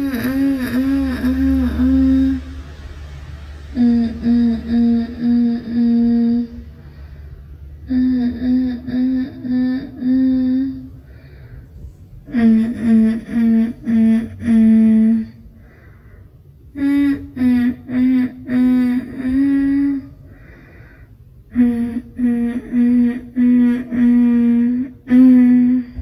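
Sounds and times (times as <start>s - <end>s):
person humming: 0.0s - 2.8s, 3.7s - 6.7s, 7.8s - 11.0s, 12.3s - 15.4s, 16.7s - 20.2s, 21.5s - 26.0s.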